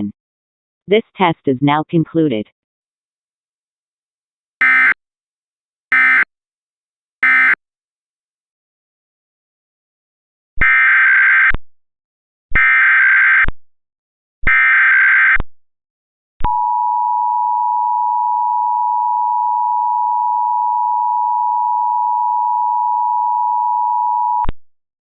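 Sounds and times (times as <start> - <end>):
two-tone alert tone: 4.6 - 5.0, 5.9 - 6.3, 7.2 - 7.6.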